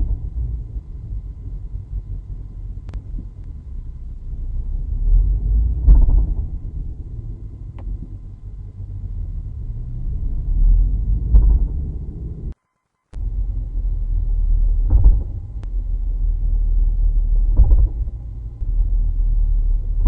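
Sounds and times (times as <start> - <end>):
car drivetrain rumble: 0.0 - 12.6, 13.2 - 20.0
heavy thump in car: 5.6 - 7.1, 11.1 - 12.1, 14.7 - 15.8, 17.2 - 18.7.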